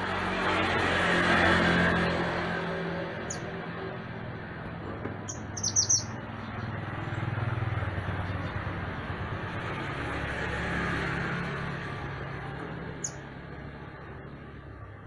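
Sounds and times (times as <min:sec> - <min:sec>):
bird chirping: 0:03.3 - 0:03.5, 0:05.2 - 0:06.6, 0:13.0 - 0:13.2.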